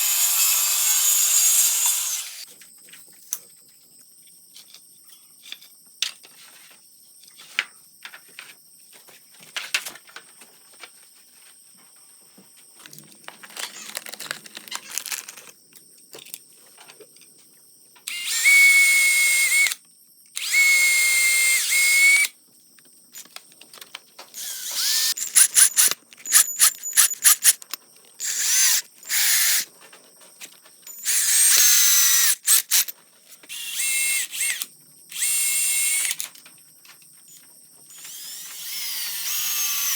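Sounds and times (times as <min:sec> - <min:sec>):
power drill whining: 0:00.0 - 0:02.5, 0:13.6 - 0:15.4, 0:18.1 - 0:19.8, 0:20.4 - 0:22.3, 0:24.4 - 0:29.7, 0:30.9 - 0:32.9, 0:33.5 - 0:36.2, 0:37.9 - 0:39.9
rasping scrape: 0:25.0 - 0:27.7.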